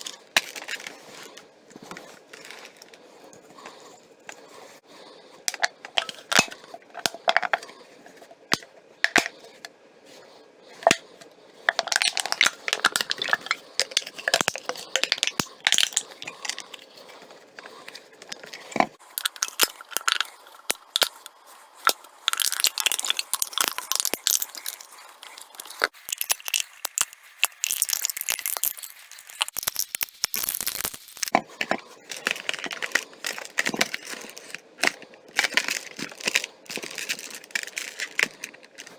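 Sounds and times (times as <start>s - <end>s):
plastic bottle and can crushed: 11.7s - 16.9s, 17.6s - 21.2s, 21.8s - 38.9s.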